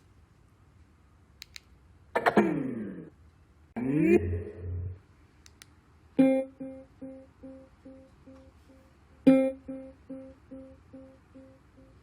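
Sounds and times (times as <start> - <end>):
plucked guitar-like prompt tone: 3.8 - 5.0, 6.2 - 8.5, 9.3 - 11.6.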